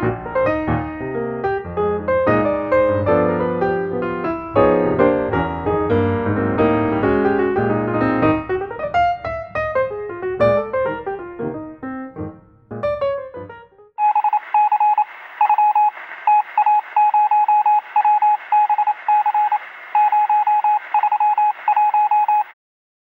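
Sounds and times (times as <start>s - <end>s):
piano music: 0.0s - 13.9s
two-pitched electronic beeps: 14.0s - 22.5s.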